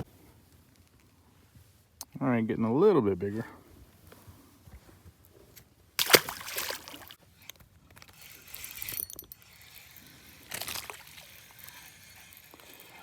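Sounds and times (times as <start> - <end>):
fishing reel ratcheting and cranking: 8.0 - 13.0
fishing reel and line burst: 8.1 - 13.0.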